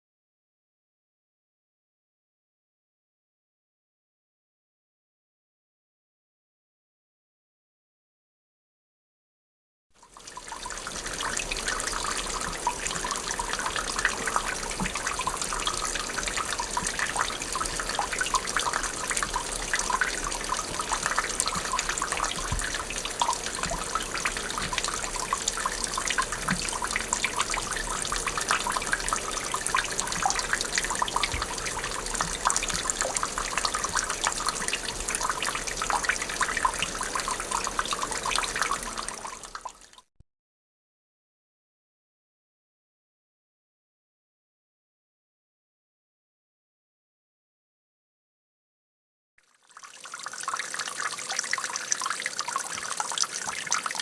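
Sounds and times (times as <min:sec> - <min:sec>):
water dripping and trickling: 0:10.0 - 0:40.0, 0:49.4 - 0:54.0.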